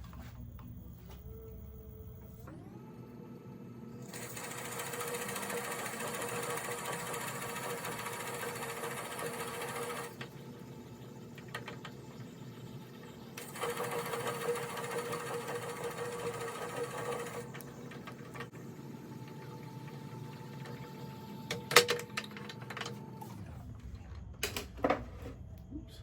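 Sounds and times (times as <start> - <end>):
lathe motor hum: 4.1 - 23.7.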